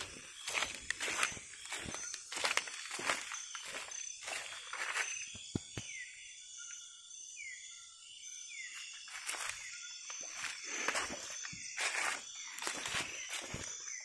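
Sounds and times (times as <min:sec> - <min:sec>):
footsteps through undergrowth: 0:00.0 - 0:05.8, 0:08.8 - 0:14.0
night insects chorus: 0:00.0 - 0:14.0.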